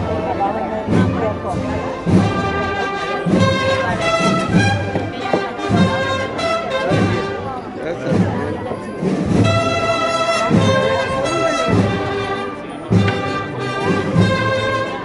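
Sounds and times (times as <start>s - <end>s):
low repeated beat: 0.0s - 7.4s
brass music with horn notes: 0.0s - 15.0s.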